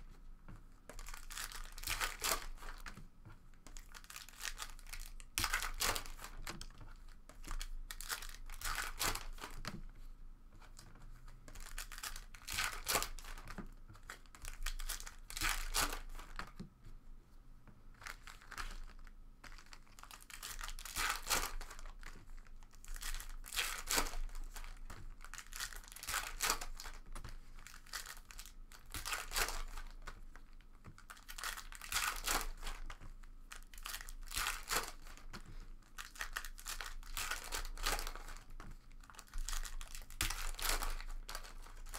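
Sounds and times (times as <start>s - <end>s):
foil wrappers tearing and crinkling: 33.5s - 35.2s, 35.9s - 38.4s, 39.0s - 41.9s.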